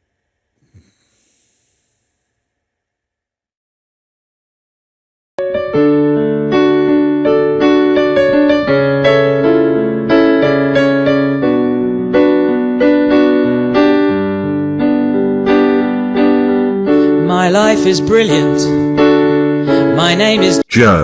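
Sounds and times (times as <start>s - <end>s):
solo piano music: 5.4s - 20.6s.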